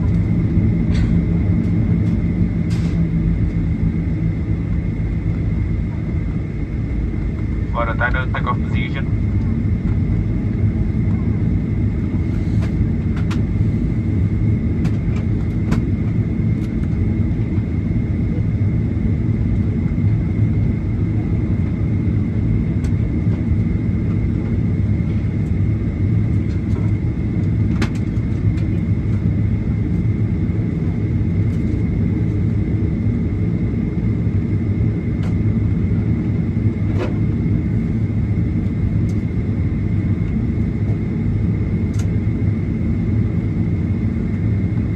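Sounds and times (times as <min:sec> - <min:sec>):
airliner engine rumble in cabin: 0:00.0 - 0:44.9.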